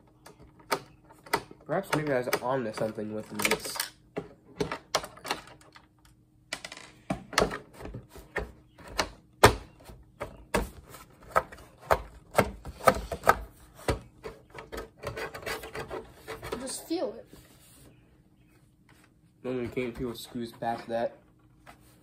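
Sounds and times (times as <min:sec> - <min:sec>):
hand tools clicking on plastic casing: 0:00.1 - 0:06.0.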